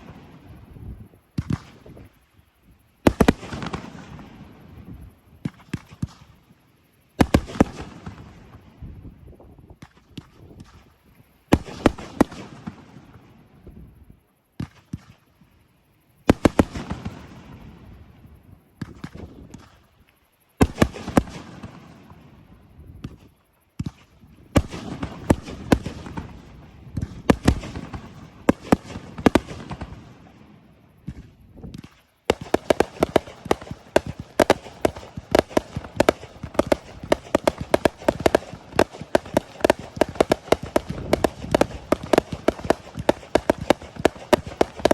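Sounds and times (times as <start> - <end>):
rapid firework cracks: 1.4 - 2.1, 3.0 - 4.4, 5.4 - 6.4, 7.2 - 8.6, 9.8 - 13.2, 16.2 - 17.8, 18.8 - 19.9, 20.6 - 22.2, 23.0 - 44.9
firework bursts crackling: 3.0 - 6.4, 7.2 - 8.6, 11.4 - 13.3, 16.2 - 17.8, 20.6 - 22.4, 23.0 - 44.9.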